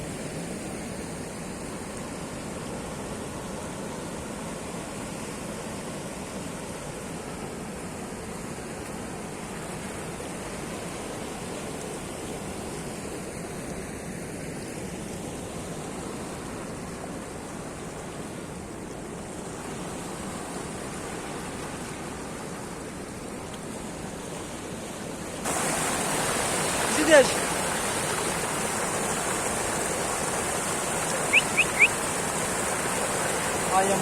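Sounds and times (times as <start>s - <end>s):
surf rushing: 16.4s - 34.0s.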